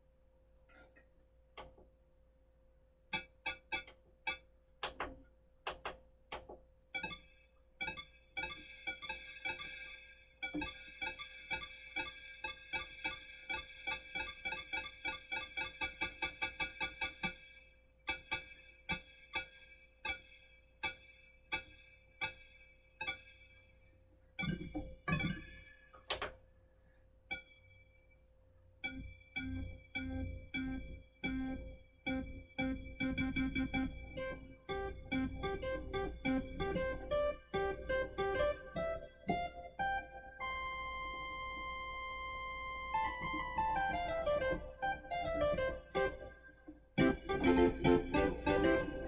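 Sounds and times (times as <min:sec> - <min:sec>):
held synthesizer layer: 0:28.9 - 0:46.4, 0:47.0 - 0:49.0
synthesizer plucked notes: 0:28.9 - 0:49.0.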